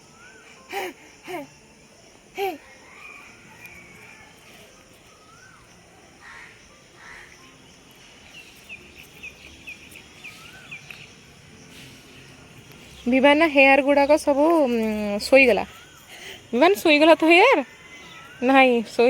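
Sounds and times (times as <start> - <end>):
birds whistling: 0.0 - 1.7, 8.2 - 19.0
steady outdoor hiss: 0.0 - 19.0
rough bird calls: 2.3 - 19.0.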